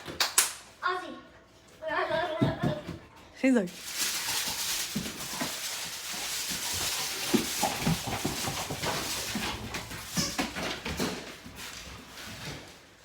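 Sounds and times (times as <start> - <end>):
dogs scuffling: 1.7 - 13.0.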